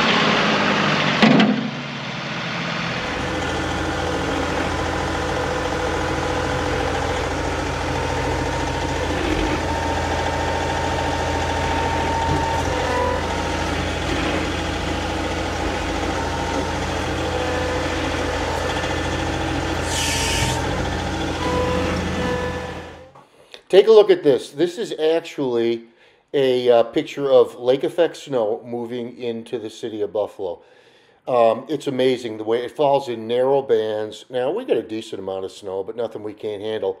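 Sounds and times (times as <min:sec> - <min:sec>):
tractor diesel engine running: 0:00.0 - 0:23.1.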